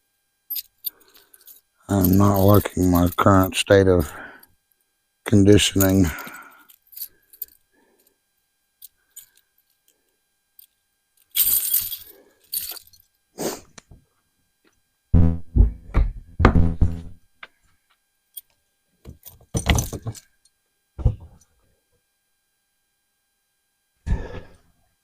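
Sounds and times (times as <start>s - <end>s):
tools clattering in a toolbox: 19.2s - 20.3s.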